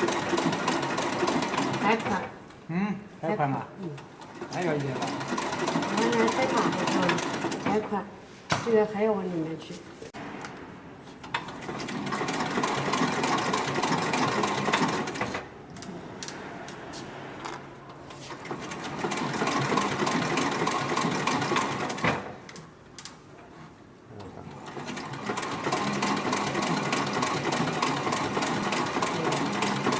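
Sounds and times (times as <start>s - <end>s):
sewing machine stitching: 0.0s - 2.4s, 4.2s - 7.9s, 11.3s - 15.5s, 18.3s - 22.4s, 24.5s - 29.9s.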